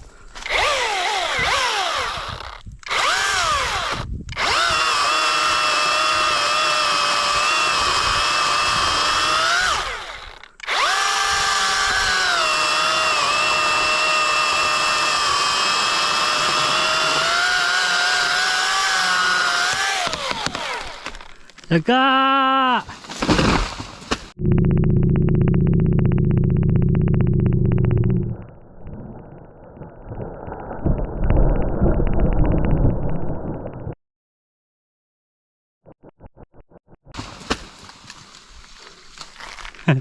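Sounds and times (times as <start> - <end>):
electric chainsaw cutting wood: 0.4 - 21.4.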